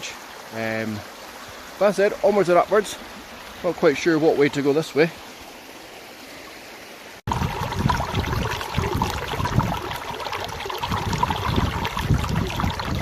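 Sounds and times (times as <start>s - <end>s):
running water: 0.0s - 13.0s
wind buffeting microphone: 7.3s - 13.0s.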